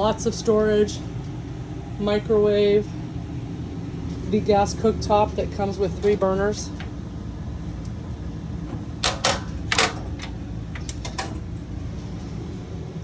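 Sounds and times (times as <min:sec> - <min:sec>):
steady low hum: 0:00.0 - 0:13.0
sharp clicks and knocks: 0:08.6 - 0:11.5.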